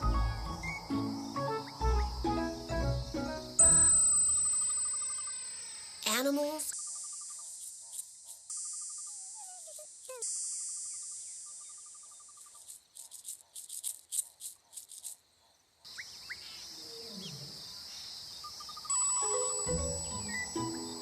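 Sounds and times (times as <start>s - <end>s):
rising bird whistles: 0.0s - 2.5s, 20.0s - 21.0s
fast pulsed insect chirping: 0.0s - 21.0s
high steady insect buzz: 0.0s - 21.0s
short insect chirps: 0.0s - 21.0s
steady insect drone: 0.0s - 21.0s.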